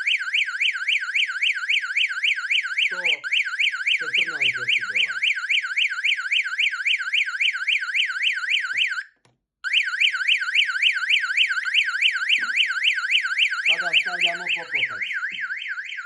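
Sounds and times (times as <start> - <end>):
electronic alarm siren warbling: 0.0 - 16.0.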